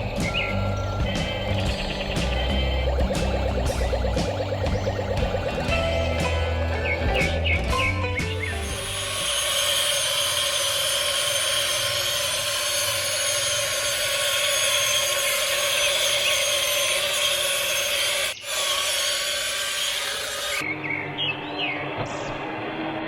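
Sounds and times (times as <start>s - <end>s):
small electric motor whirring: 8.3s - 20.6s.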